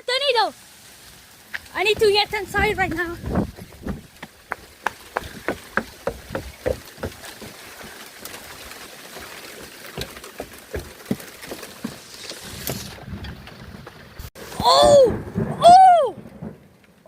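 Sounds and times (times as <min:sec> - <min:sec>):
heavy rain hiss: 0:00.0 - 0:16.6.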